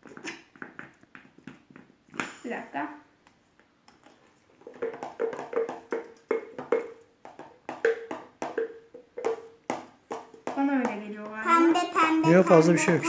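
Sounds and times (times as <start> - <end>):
slime stirred in a bowl: 3.4 - 12.6.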